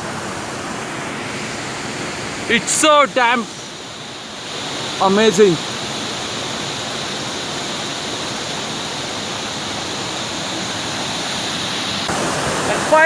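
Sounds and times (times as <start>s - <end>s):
waterfall rushing: 0.0s - 13.0s.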